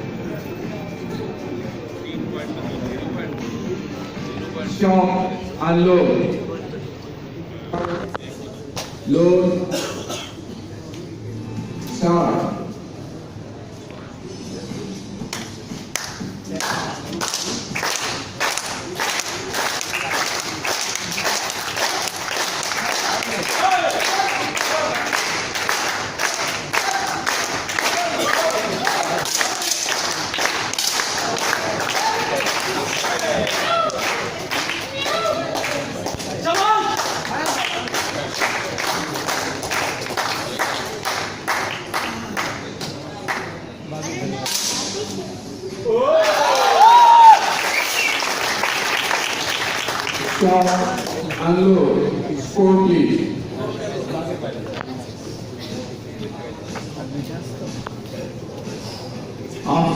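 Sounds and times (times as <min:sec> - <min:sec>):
spectators clapping in rhythm: 0:15.3 - 0:43.6, 0:46.2 - 0:51.5.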